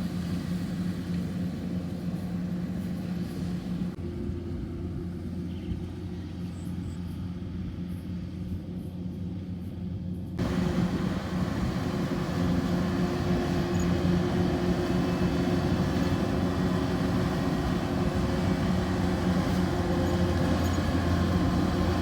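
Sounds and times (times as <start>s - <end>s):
tractor engine running: 10.4s - 22.0s.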